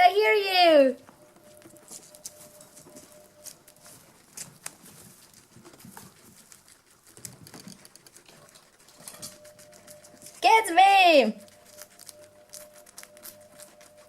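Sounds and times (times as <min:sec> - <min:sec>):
guinea pigs munching: 0:00.0 - 0:14.0.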